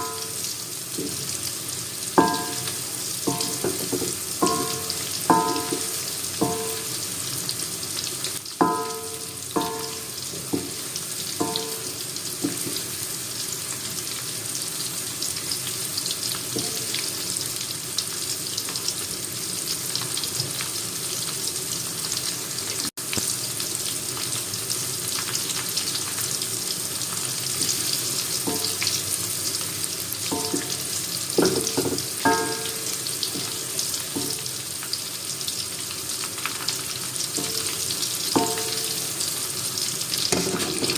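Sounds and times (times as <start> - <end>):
metal utensil clinking on pan: 0.0 - 0.5, 2.2 - 6.9, 8.6 - 10.8, 11.4 - 12.7, 16.6 - 17.0, 28.4 - 29.0, 30.3 - 34.5, 37.4 - 39.2, 40.3 - 40.9
tofu sizzling in oil: 0.0 - 40.9.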